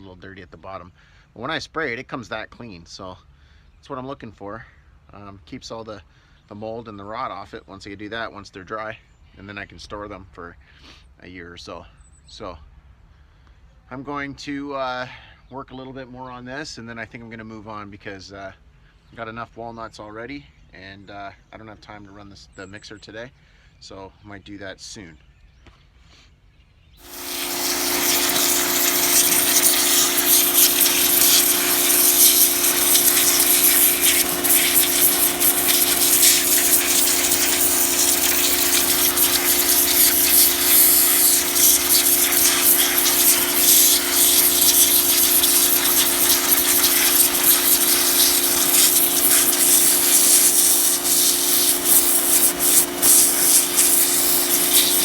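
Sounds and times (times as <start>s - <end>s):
pressure washer pump hum: 27.0s - 55.0s
water jet hissing: 27.0s - 55.0s.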